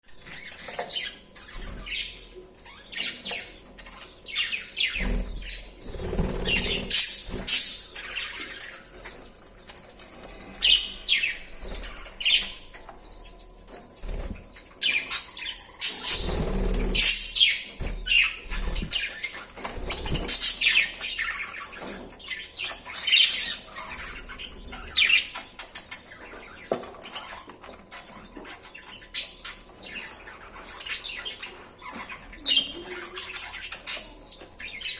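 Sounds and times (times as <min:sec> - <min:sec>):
budgerigars chirping: 0:00.2 - 0:34.9
low thuds and flutters: 0:17.8 - 0:19.0.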